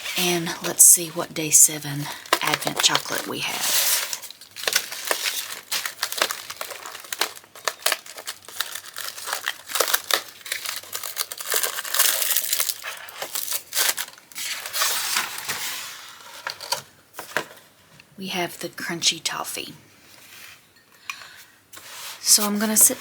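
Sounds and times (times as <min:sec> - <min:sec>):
wrapper crinkling and crackling: 0:00.0 - 0:17.8.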